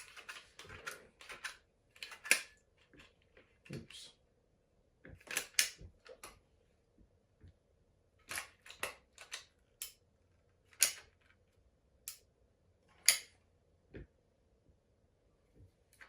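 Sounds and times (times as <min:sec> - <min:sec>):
sharp clicks and snaps: 0:12.1 - 0:12.3.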